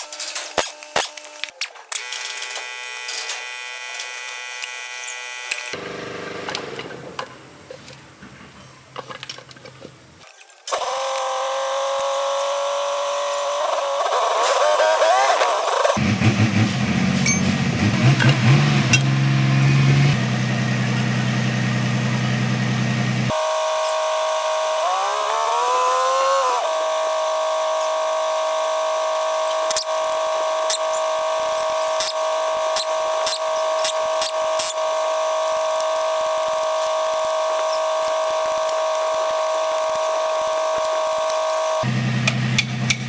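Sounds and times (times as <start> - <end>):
high motor whine: 0.9 - 7.5.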